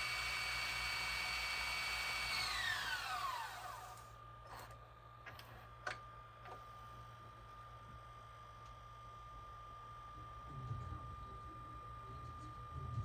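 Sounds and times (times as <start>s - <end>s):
motor whining and spinning down: 0.0s - 4.8s.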